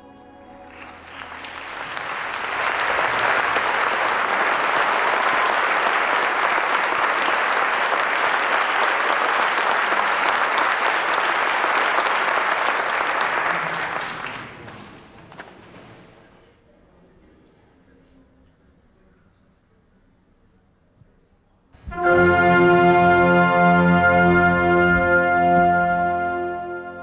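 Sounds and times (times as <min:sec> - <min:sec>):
audience applauding: 0:00.6 - 0:15.5.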